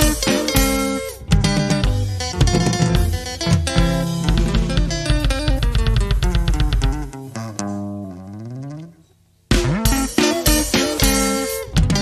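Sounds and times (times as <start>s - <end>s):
steady beat: 0.0s - 7.8s, 9.5s - 12.0s
bass guitar: 0.0s - 12.0s
electric guitars picking: 0.0s - 12.0s.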